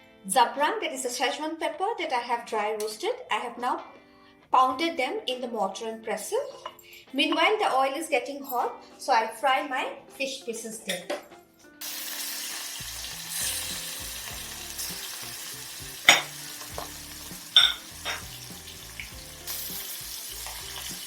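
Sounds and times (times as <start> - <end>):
fish frying in oil: 11.8 - 21.0.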